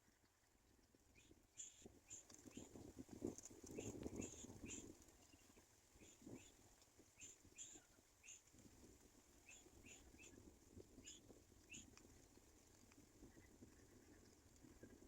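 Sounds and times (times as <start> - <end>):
faint bird chirps: 1.1 - 2.8, 3.7 - 6.6, 7.2 - 8.5, 9.4 - 10.4, 11.0 - 12.0.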